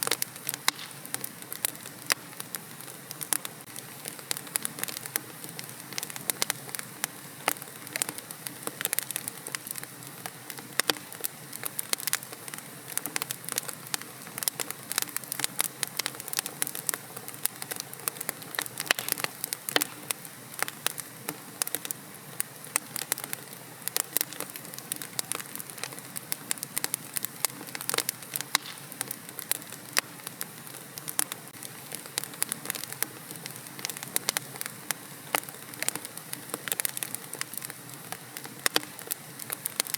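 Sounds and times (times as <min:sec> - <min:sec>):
soft steady hiss: 0:00.0 - 0:39.9
wood fire crackling: 0:00.0 - 0:39.9.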